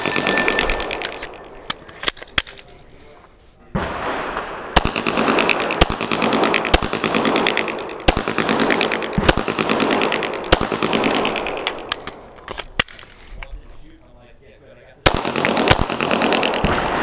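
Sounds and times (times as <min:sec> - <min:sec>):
steady noise: 0:00.0 - 0:03.0
pistol shots: 0:03.8 - 0:13.0, 0:15.1 - 0:17.0.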